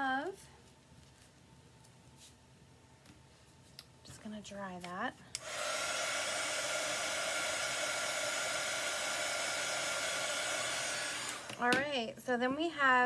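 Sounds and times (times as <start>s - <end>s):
electric dryer blowing air: 5.4s - 11.9s.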